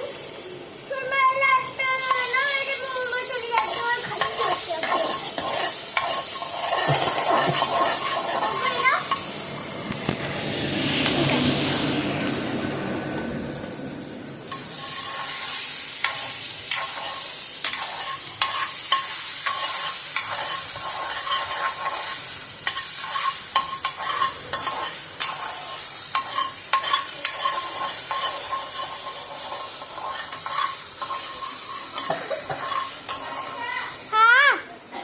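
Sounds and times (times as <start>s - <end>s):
food sizzling in oil: 0.0s - 34.7s
spoon scraping pan: 2.0s - 2.4s, 3.5s - 9.4s, 14.5s - 34.0s.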